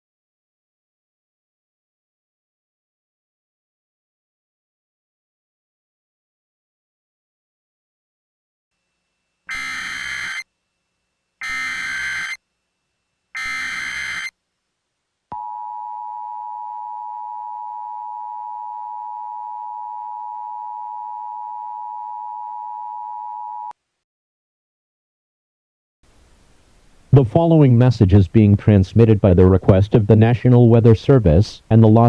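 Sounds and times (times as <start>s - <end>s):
screeching digital data bursts: 9.5s - 10.4s, 11.4s - 12.4s, 13.4s - 14.3s
two-tone attention signal: 9.5s - 10.4s, 11.4s - 12.4s, 13.4s - 14.3s.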